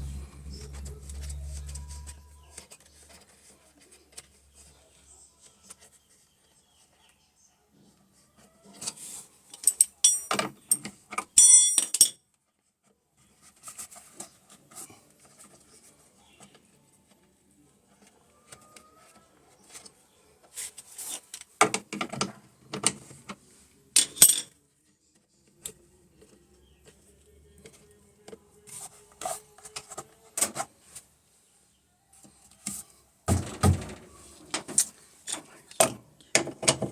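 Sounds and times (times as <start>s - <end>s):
small metal objects clinking: 9.6s - 10.5s
handling knocks: 33.3s - 34.7s.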